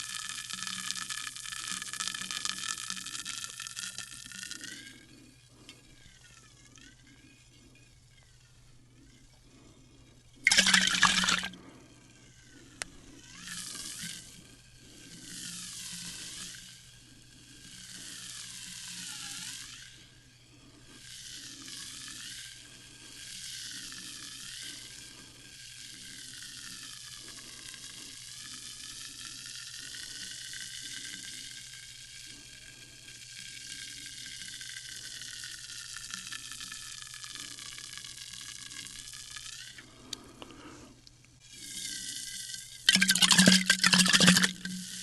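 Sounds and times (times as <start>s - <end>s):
sparkling water fizzing: 10.5s - 11.5s, 42.9s - 44.8s.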